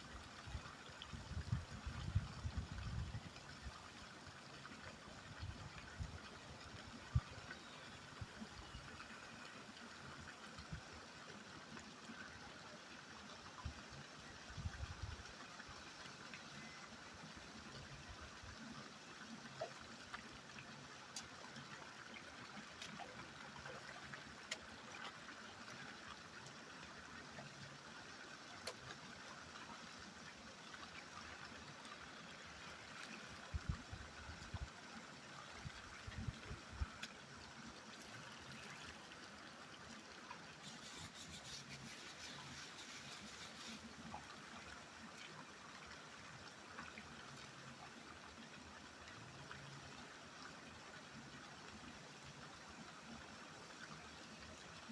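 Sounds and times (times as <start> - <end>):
river water flowing: 15.2 - 54.9.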